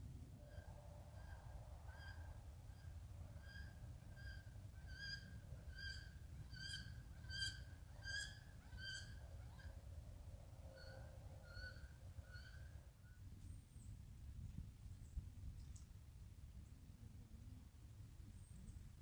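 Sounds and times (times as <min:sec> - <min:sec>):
faint low rumble: 0:09.8 - 0:19.0.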